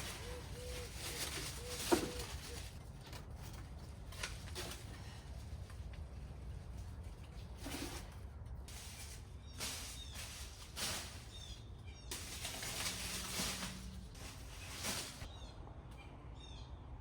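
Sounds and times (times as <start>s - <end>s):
leaves rustling: 0.0s - 15.4s
small birds chirping: 8.8s - 13.5s.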